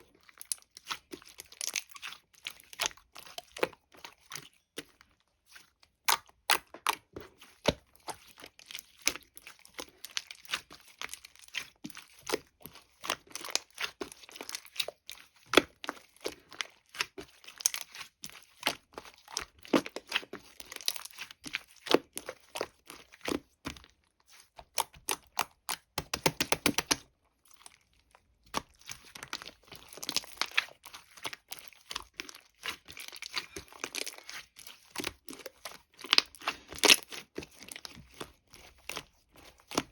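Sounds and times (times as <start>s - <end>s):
sticky plastic wrapper crinkling: 28.5s - 39.9s.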